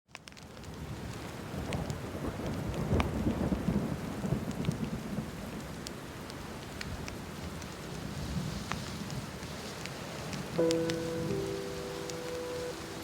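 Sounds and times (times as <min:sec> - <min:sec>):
wood fire crackling and popping: 0:00.1 - 0:03.5, 0:04.3 - 0:13.0
steady rain: 0:00.1 - 0:13.0
thunder rumble: 0:10.2 - 0:13.0.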